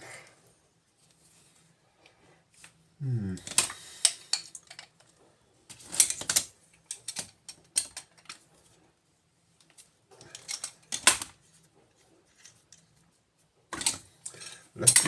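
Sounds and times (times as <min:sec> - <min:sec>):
scrap metal clinking and clattering: 0:05.7 - 0:08.8, 0:09.7 - 0:13.0, 0:13.7 - 0:15.0.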